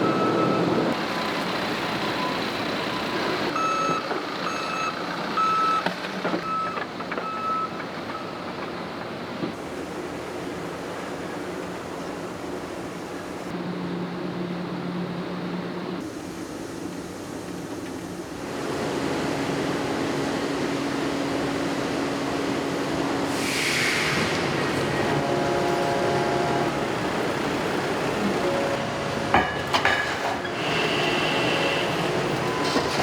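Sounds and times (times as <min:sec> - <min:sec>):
factory machinery humming: 0:00.0 - 0:05.5, 0:06.2 - 0:33.0
loud hiss: 0:16.0 - 0:28.6.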